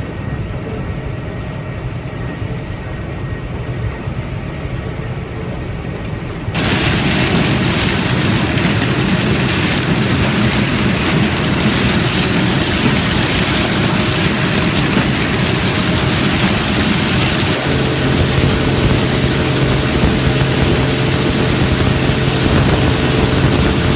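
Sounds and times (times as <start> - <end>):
harvest machinery running: 6.6 - 23.9
low engine hum: 6.6 - 23.9.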